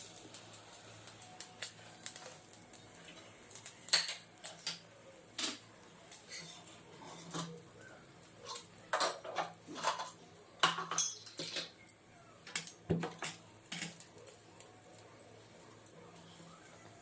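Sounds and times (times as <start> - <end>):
metal utensils clinking on pots: 3.9 - 5.6, 6.2 - 7.6, 8.4 - 14.1.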